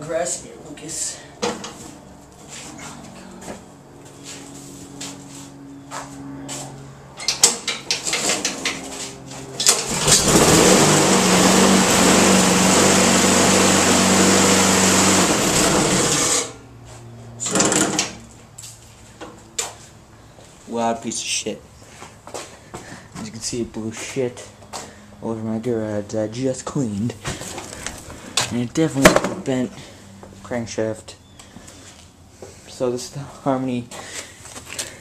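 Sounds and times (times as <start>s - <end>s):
lawn mower engine starting: 9.6s - 16.6s, 17.4s - 18.2s.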